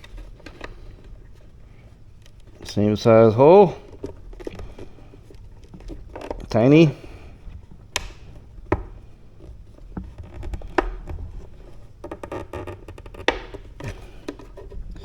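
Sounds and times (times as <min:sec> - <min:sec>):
faint rustling: 0:00.0 - 0:15.0
sharp clicks and light knocks: 0:07.7 - 0:15.0.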